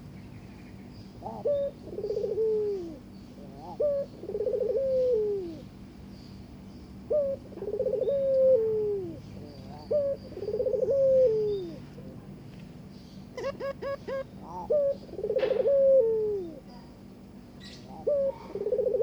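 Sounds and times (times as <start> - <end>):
dove cooing: 1.2 - 5.8, 7.0 - 11.9, 13.3 - 16.9, 17.6 - 19.0.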